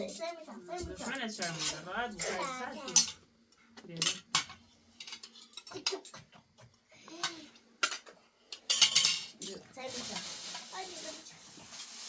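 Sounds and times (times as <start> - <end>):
cutlery and dishes clinking: 0.0 - 3.3, 4.0 - 6.3, 7.2 - 11.0
rustling scrape: 9.8 - 12.0.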